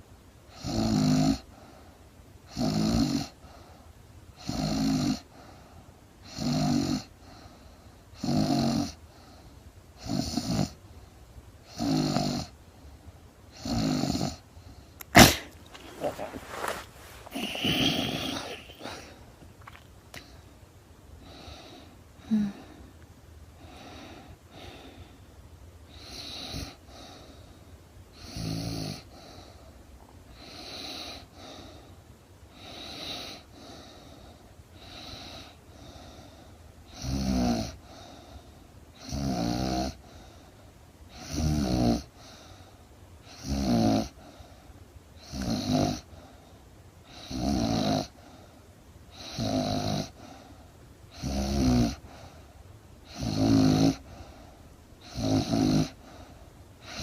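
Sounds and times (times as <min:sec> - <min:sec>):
woman snoring: 0:00.6 - 0:01.4, 0:02.6 - 0:03.3, 0:04.5 - 0:05.2, 0:06.3 - 0:07.1, 0:08.2 - 0:09.0, 0:11.7 - 0:12.5, 0:13.6 - 0:14.4, 0:15.0 - 0:19.8, 0:21.3 - 0:22.8, 0:28.2 - 0:29.1, 0:43.4 - 0:44.2, 0:45.3 - 0:46.1, 0:47.2 - 0:48.1, 0:49.2 - 0:50.2, 0:51.2 - 0:52.0, 0:53.1 - 0:54.0, 0:55.1 - 0:56.0.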